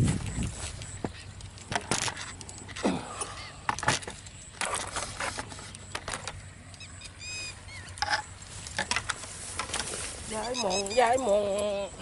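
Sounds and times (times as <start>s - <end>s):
handling clicks and rustling: 0.0s - 12.0s
bird chirping: 2.2s - 8.6s, 10.3s - 12.0s.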